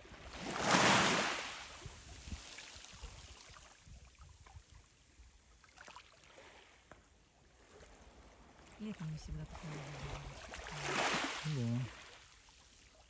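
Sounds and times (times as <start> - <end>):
wave breaking on shore: 0.0 - 3.2, 9.5 - 12.4
faint surf: 0.0 - 13.0.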